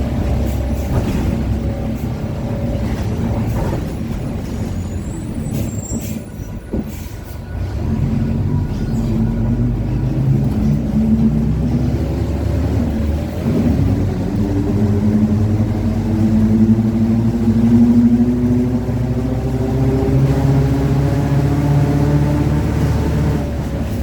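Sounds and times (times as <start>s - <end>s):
bus drivetrain growl: 0.0s - 24.0s
diesel engine running: 0.0s - 24.0s.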